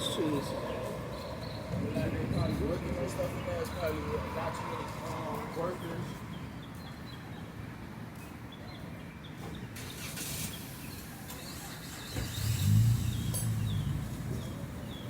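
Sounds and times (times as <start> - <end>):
motor vehicle passing: 9.8 - 15.0.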